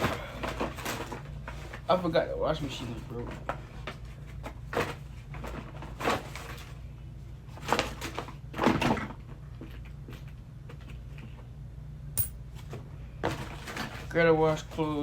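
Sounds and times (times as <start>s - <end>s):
steady low hum: 10.4s - 13.2s.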